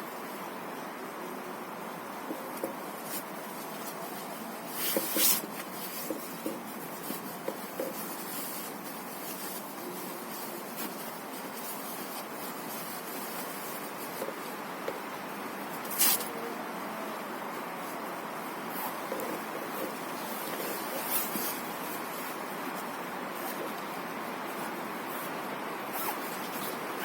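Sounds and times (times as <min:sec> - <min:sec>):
steady background noise: 0:00.0 - 0:27.0
loud rustle: 0:01.8 - 0:16.5, 0:17.2 - 0:27.0.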